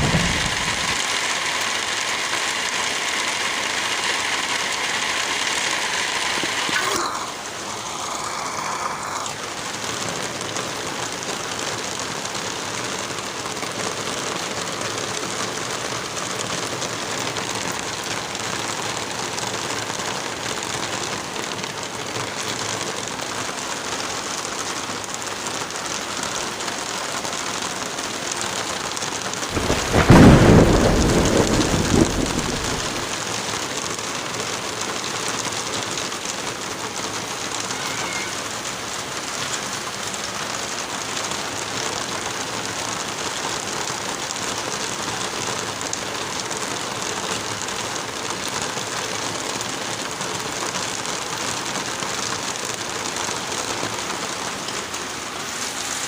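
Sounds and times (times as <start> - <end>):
deep roll of thunder: 0.0 - 1.1, 29.5 - 33.2
rain hissing: 0.0 - 56.0.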